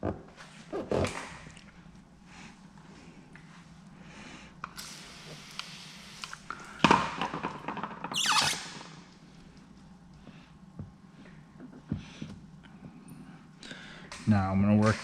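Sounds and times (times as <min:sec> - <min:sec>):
hiss: 0:04.8 - 0:06.5
squeegee squeak falling in pitch: 0:08.1 - 0:08.8.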